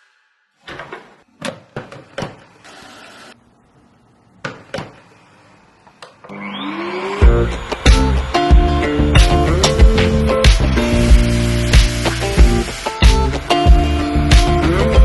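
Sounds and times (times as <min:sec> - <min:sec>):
vacuum motor whining: 0:06.0 - 0:12.8
loud music with a beat: 0:07.9 - 0:15.0.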